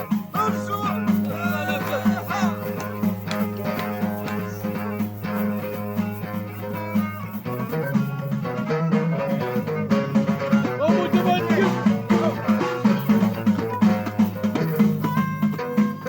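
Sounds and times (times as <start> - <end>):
plucked strings: 0.0 - 16.0.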